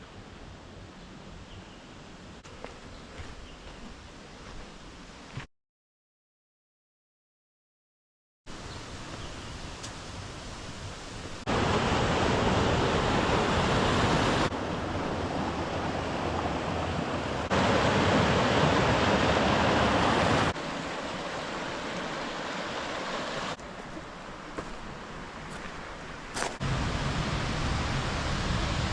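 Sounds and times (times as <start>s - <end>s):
waterfall rushing water: 10.2s - 23.6s.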